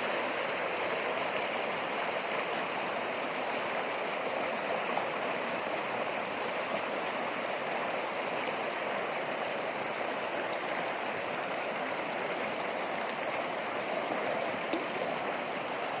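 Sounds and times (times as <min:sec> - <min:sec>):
river water rushing over rocks: 0:00.0 - 0:16.0
faint ticks: 0:14.6 - 0:15.1.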